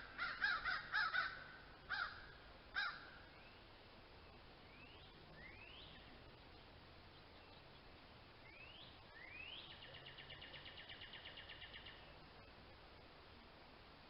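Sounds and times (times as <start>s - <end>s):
songbird whistles and trill: 4.7s - 6.0s, 8.4s - 11.9s.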